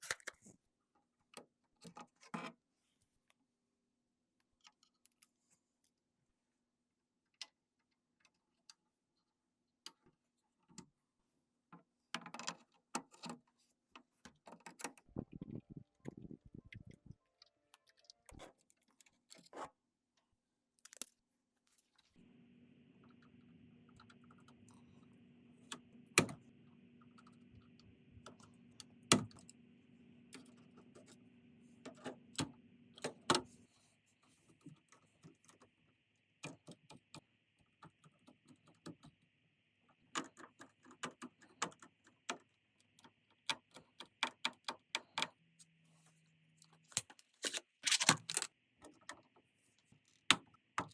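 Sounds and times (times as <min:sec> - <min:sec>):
faint steady hum: 0:22.2 - 0:40.1
computer parts clicking: 0:46.9 - 0:48.5.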